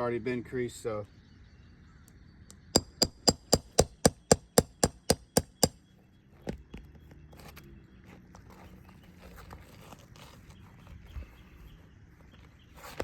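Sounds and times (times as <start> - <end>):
hammer tapping metal: 2.8 - 5.8.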